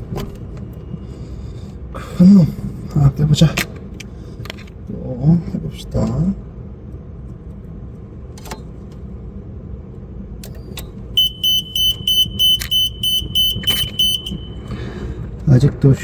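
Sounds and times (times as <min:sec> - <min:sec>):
control board beeping rapidly: 0:11.2 - 0:14.7
sharp clicks: 0:11.3 - 0:14.8.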